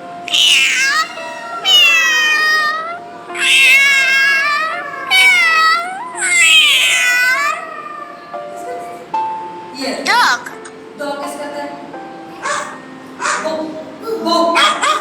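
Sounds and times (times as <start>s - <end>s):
cat meowing: 0.2s - 8.8s.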